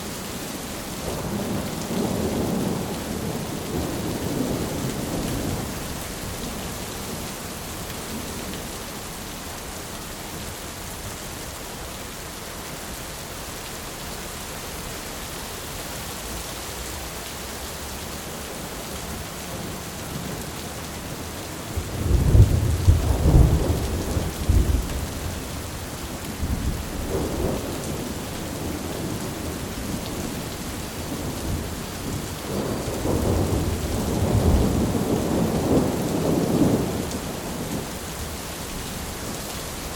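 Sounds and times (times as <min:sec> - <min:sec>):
heavy rain falling: 0:00.0 - 0:39.9
thunder rumbling: 0:19.1 - 0:37.9.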